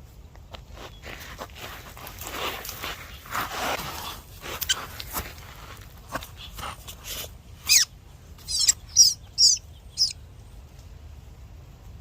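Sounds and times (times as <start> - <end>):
soft scuffs: 0.5 - 7.4
small bird high-pitched calls: 7.6 - 10.3.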